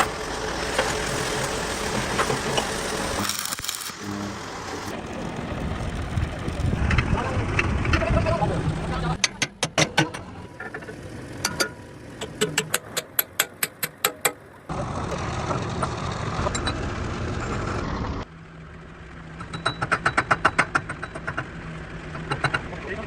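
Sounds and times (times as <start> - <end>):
steady machine noise: 0.0 - 13.4
sharp knocks: 9.2 - 10.3.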